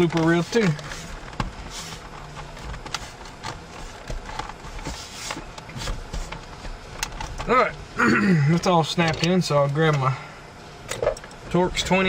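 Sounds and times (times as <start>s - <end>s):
plastic rubbing: 0.0s - 7.4s.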